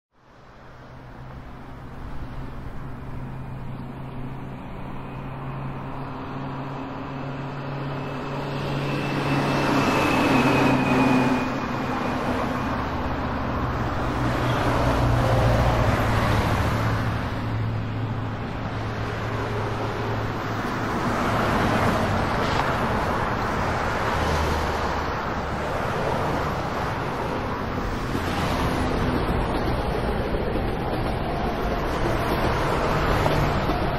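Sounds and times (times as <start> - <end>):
vehicles passing: 0.2 - 33.9.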